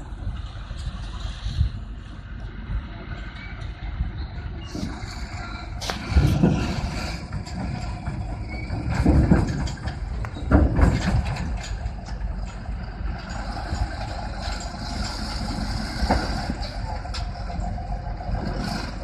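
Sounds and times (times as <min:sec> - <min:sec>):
heavy vehicle engines rumbling: 0:00.0 - 0:19.0.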